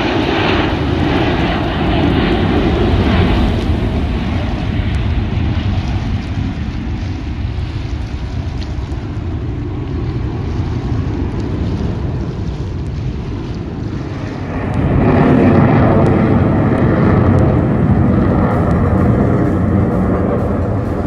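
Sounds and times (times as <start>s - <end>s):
aircraft engine rumble: 0.0s - 8.5s, 14.0s - 21.0s
wind buffeting microphone: 14.4s - 21.0s.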